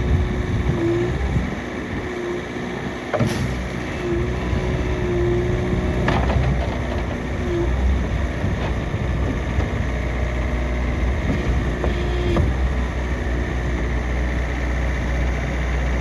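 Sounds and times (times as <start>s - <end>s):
diesel engine rumbling: 0.0s - 16.0s.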